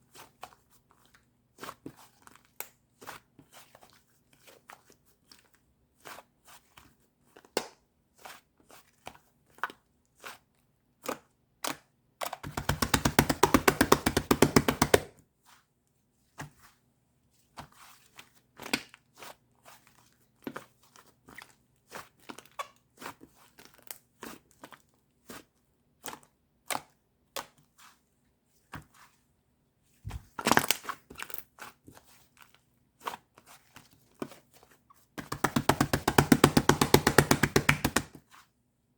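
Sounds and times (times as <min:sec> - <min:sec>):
rapid crackling pops of slime: 0:12.5 - 0:15.1, 0:35.2 - 0:38.2.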